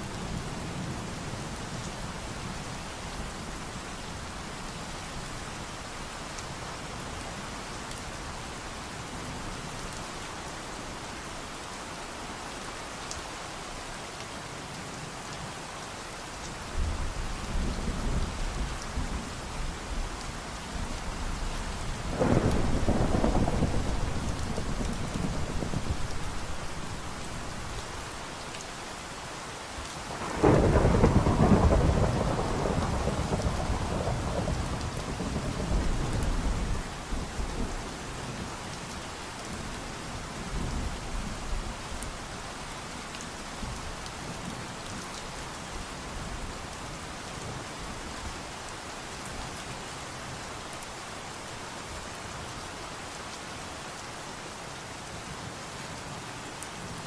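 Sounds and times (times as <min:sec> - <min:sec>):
steady rain: 0:00.0 - 0:57.0
thunder rolling: 0:22.2 - 0:26.5.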